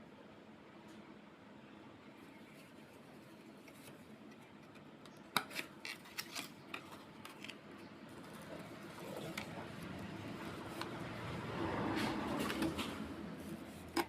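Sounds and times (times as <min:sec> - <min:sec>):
faint steady hum: 0:00.0 - 0:14.0
light clicks and rustles of packaging: 0:02.3 - 0:11.1.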